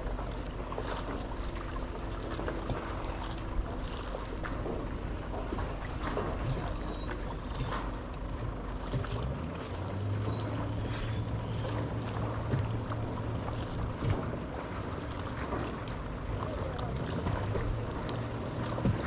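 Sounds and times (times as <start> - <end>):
boat motor humming: 0.0 - 19.0
water noise: 0.0 - 19.0
faint high chirps: 4.8 - 11.8.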